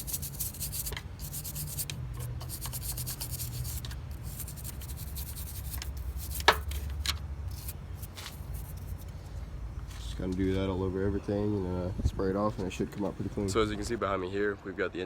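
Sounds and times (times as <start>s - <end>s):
toothbrush scrubbing engine parts: 0.0s - 9.1s.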